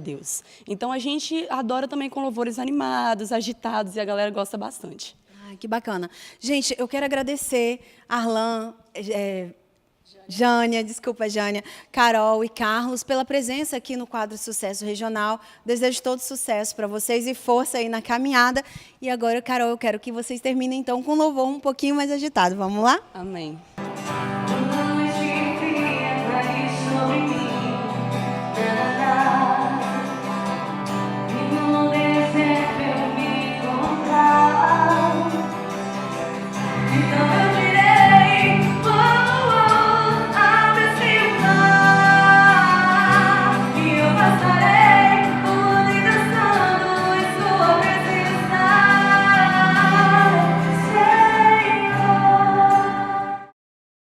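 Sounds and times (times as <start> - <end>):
instrumental accompaniment: 23.8 - 53.4
group singing praise song: 31.2 - 35.5, 36.8 - 53.5.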